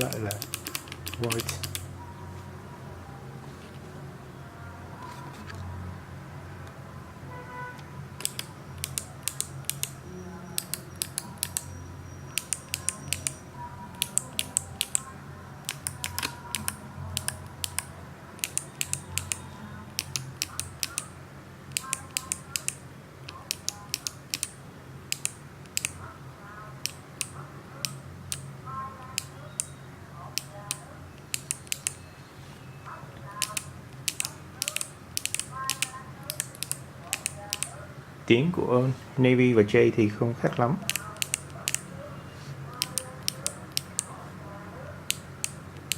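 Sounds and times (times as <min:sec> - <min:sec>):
mechanical keyboard keys clicking: 0:00.0 - 0:01.9, 0:08.2 - 0:10.0, 0:10.6 - 0:11.7, 0:12.3 - 0:26.0, 0:26.8 - 0:32.0, 0:33.2 - 0:37.8, 0:40.8 - 0:41.9, 0:42.7 - 0:44.2, 0:45.0 - 0:45.9.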